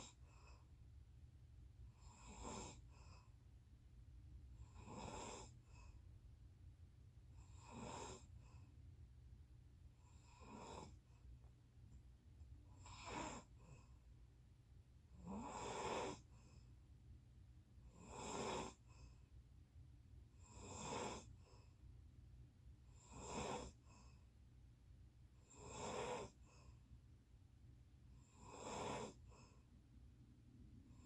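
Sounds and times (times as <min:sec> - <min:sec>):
person snoring: 0:04.7 - 0:05.6, 0:07.5 - 0:08.3, 0:10.2 - 0:11.0, 0:15.2 - 0:16.3, 0:20.5 - 0:21.3, 0:23.0 - 0:23.8, 0:25.5 - 0:26.4, 0:28.3 - 0:29.2.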